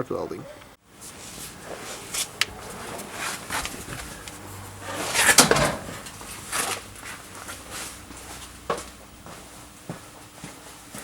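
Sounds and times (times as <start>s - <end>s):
handling rustles and knocks: 1.0s - 11.0s
scraping clatter: 1.1s - 7.9s.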